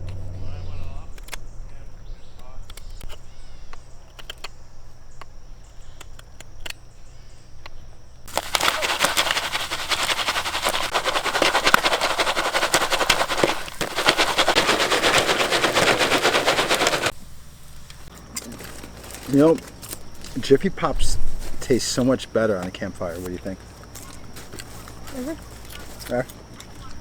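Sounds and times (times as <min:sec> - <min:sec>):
popcorn popping: 0:08.3 - 0:17.2.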